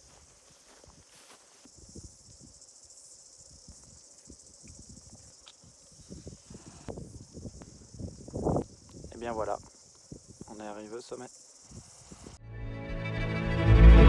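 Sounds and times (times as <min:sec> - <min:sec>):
footsteps walking: 0:00.0 - 0:01.8
insects chirring: 0:00.0 - 0:12.4.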